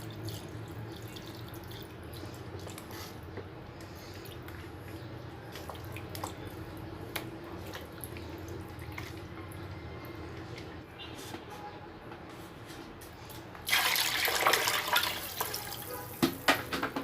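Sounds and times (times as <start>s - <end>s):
water dripping and splashing: 0.0s - 9.7s, 13.6s - 16.5s.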